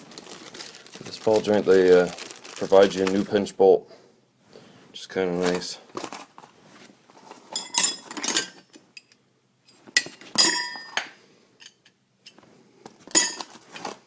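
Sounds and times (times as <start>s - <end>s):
metal parts clinking and rattling: 7.5s - 9.1s, 10.0s - 11.0s, 13.1s - 13.6s.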